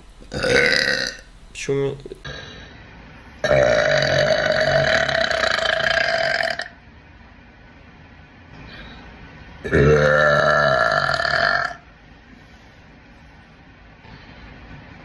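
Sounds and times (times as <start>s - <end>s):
woman burping: 0.3s - 1.2s, 3.4s - 6.7s, 9.7s - 11.8s.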